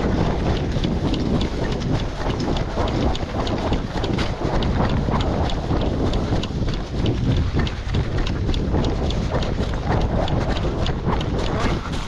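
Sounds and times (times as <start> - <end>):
wind buffeting microphone: 0.0 - 12.0.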